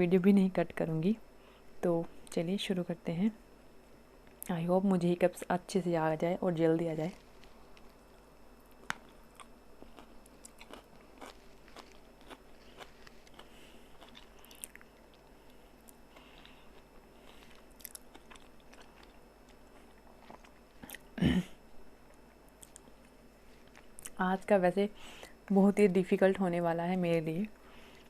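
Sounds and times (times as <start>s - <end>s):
person chewing noodles: 8.8s - 21.1s, 22.6s - 24.2s.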